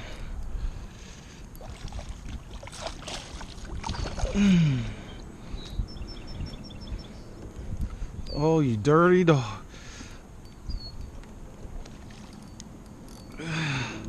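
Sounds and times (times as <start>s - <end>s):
wind rumble on microphone: 0.0s - 9.1s, 10.2s - 14.0s
water splashing around kayak: 1.6s - 4.5s.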